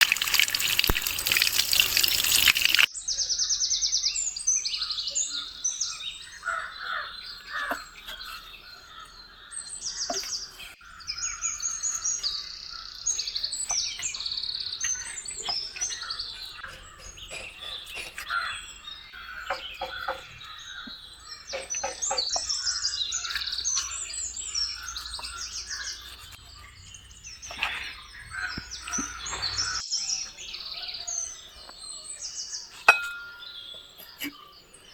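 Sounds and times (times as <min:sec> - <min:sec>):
running water rushing: 0:00.0 - 0:02.9
small birds chirping: 0:00.0 - 0:34.9.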